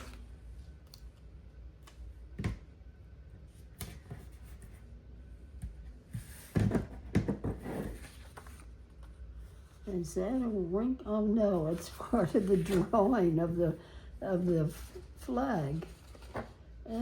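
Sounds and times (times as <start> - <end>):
paper rustling and crinkling: 7.4 - 8.7, 11.7 - 13.2, 15.7 - 16.7.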